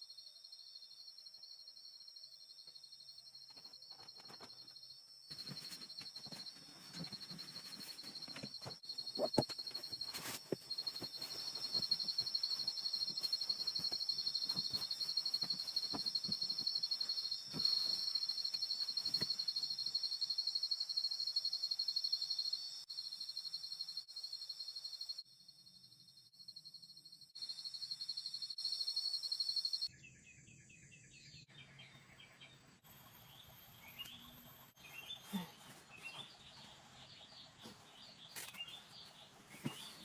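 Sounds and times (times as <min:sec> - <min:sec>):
insects trilling: 0:00.4 - 0:25.3.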